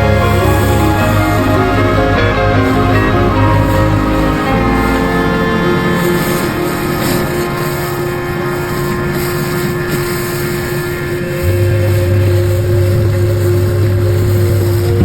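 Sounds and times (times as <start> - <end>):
background music: 0.0 - 15.0
deep low hum: 11.4 - 15.0.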